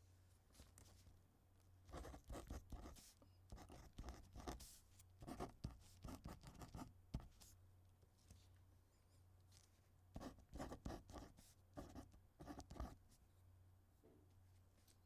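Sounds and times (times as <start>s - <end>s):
pen writing: 1.9s - 7.3s, 10.2s - 13.0s.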